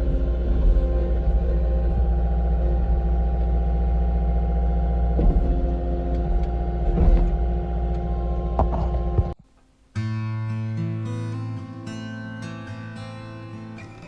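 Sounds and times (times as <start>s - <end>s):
skid steer engine running: 0.0s - 9.4s.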